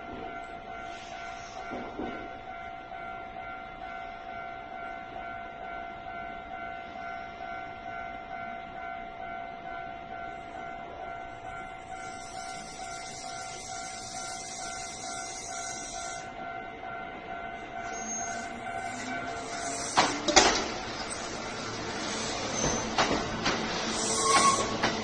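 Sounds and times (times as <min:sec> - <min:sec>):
level crossing warning bell: 0:00.0 - 0:25.0
loud high hiss: 0:12.1 - 0:16.2, 0:19.0 - 0:22.6.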